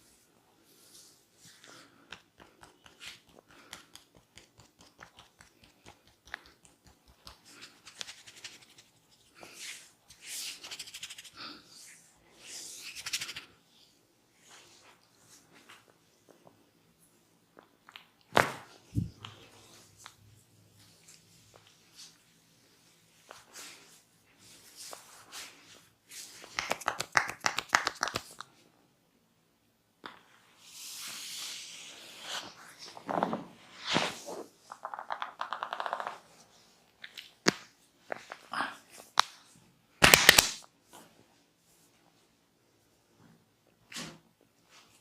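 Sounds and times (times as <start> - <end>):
hands rubbing skin: 0.8 - 13.6, 23.1 - 28.5
hands clicking and patting skin: 1.7 - 9.2, 10.6 - 11.4, 12.8 - 13.5, 26.4 - 28.5, 34.7 - 36.2, 40.0 - 40.7.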